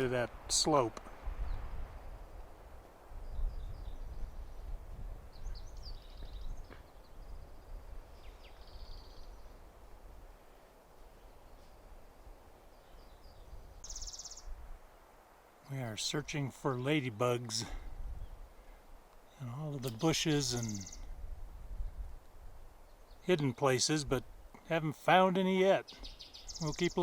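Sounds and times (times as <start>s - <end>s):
wind rumbling on microphone: 0.0s - 15.0s, 17.7s - 18.7s, 20.2s - 23.2s
songbird chirps: 0.0s - 27.0s
buzzy bird trill: 19.9s - 21.0s.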